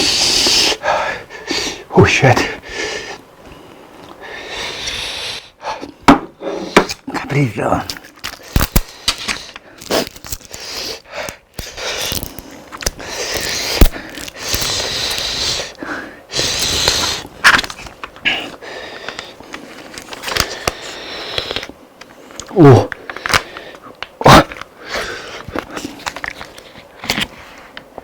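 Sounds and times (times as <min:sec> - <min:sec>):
hissing: 0:00.0 - 0:03.2, 0:08.4 - 0:25.9
crunchy chewing: 0:06.9 - 0:28.0.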